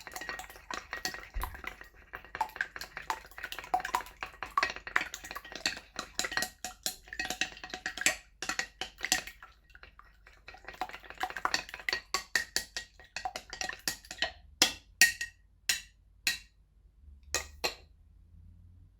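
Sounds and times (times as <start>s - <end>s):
sharp taps on bowl: 10.6s - 16.5s, 17.4s - 17.9s.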